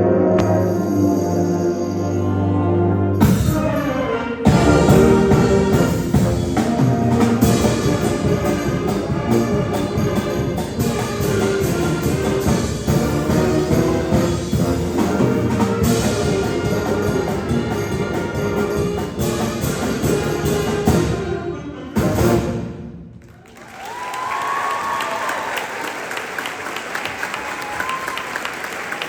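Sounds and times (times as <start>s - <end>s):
concert band playing: 0.0s - 23.0s
audience applause: 23.3s - 29.0s.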